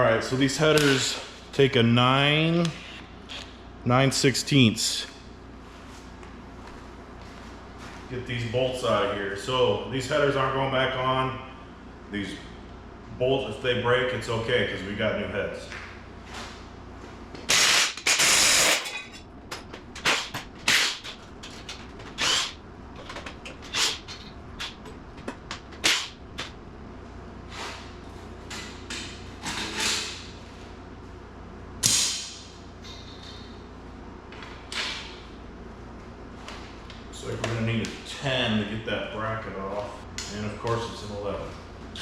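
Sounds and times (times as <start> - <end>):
loud harsh bursts: 17.5 - 18.9.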